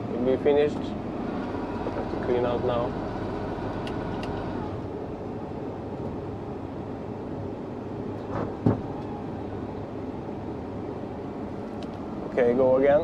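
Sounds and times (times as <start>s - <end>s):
tractor engine running: 0.0s - 5.0s
harvester machinery: 0.0s - 5.2s.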